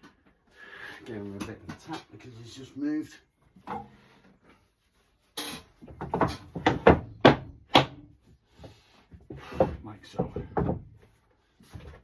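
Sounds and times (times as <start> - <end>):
sharp knocks on wood: 6.0 - 8.0.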